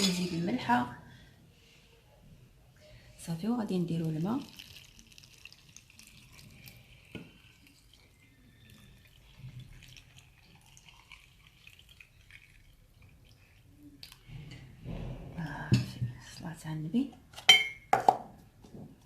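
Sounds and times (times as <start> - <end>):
water dripping: 3.8 - 14.3
water pouring into glass jar: 3.8 - 14.3.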